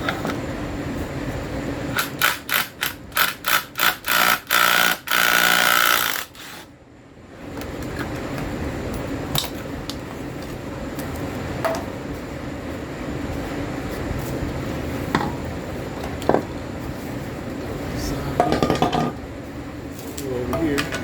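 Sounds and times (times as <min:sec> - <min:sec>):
power wrench on a bolt: 0:02.0 - 0:06.7.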